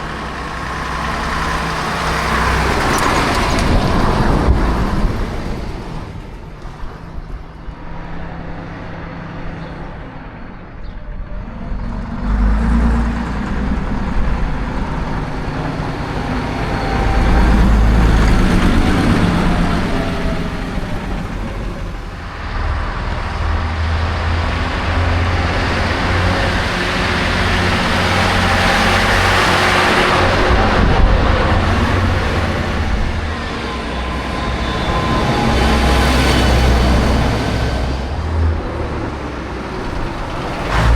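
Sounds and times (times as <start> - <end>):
bus diesel engines driving by: 0.0 - 40.9.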